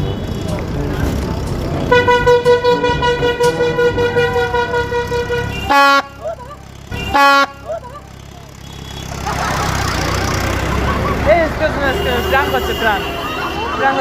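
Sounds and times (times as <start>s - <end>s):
train horn blasts: 1.9s - 6.2s, 6.9s - 7.6s.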